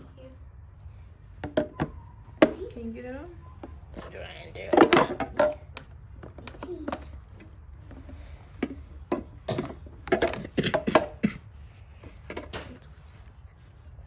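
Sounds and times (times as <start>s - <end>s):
plastic parts clicking and knocking: 8.6s - 11.2s.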